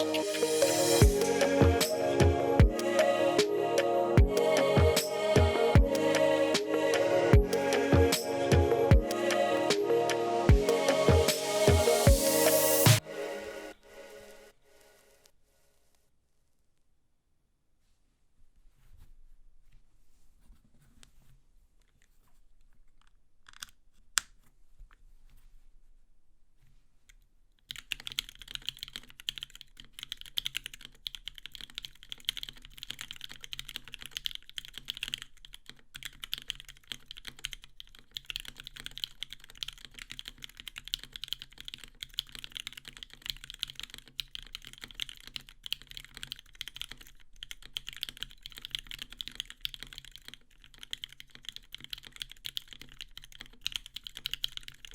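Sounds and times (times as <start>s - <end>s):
mechanical keyboard typing: 27.7s - 54.9s.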